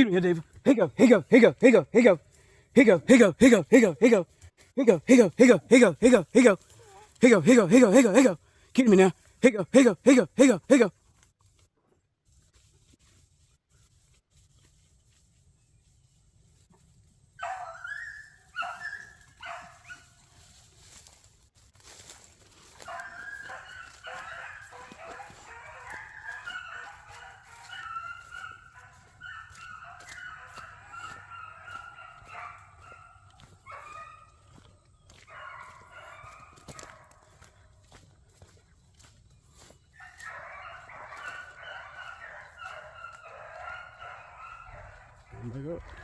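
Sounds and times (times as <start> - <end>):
pack of dogs baying: 0.0 - 4.3, 4.9 - 10.9, 17.4 - 20.1, 22.6 - 37.6, 39.6 - 46.0.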